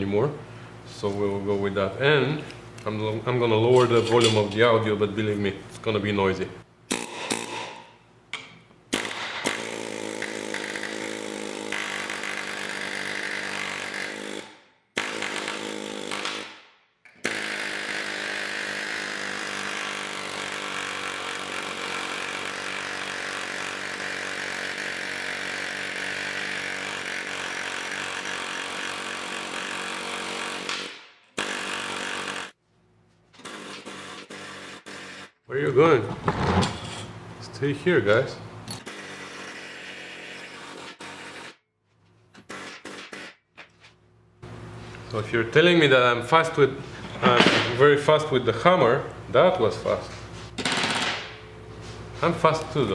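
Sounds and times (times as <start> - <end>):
pneumatic air chisel hammering metal: 6.9 - 32.6, 33.4 - 35.4, 38.7 - 41.6, 42.4 - 43.4, 50.6 - 51.5.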